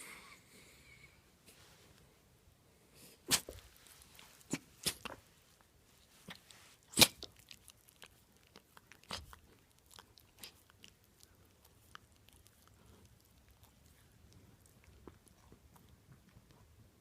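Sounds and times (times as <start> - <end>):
dog sneezing: 3.2 - 3.6, 6.9 - 7.2
dog mouth clicks and smacks: 7.0 - 12.6.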